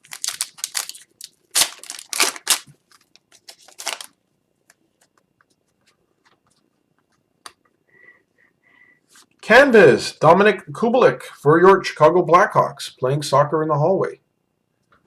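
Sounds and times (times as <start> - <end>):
cards rustling and snapping: 0.0 - 4.1.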